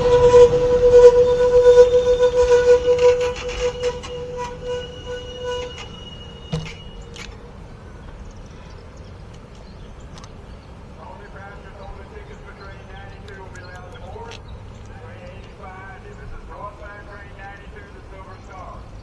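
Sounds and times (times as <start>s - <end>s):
train brakes squealing: 0.0s - 7.6s
knock: 6.5s - 6.8s.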